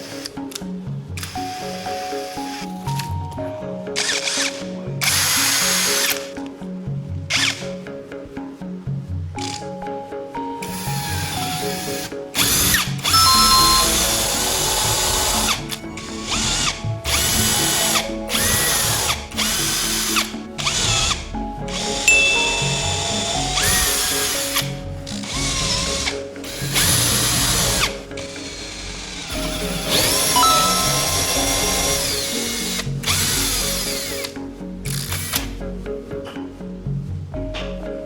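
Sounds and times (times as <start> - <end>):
background music: 0.0 - 38.0
electric drill spinning up and down: 5.0 - 6.3, 12.4 - 21.2, 23.2 - 29.4, 31.2 - 34.3.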